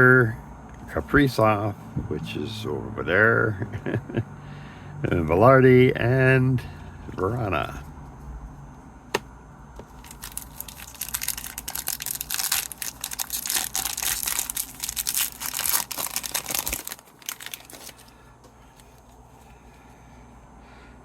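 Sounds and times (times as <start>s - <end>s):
plastic wrapper tearing and crinkling: 9.9s - 18.2s.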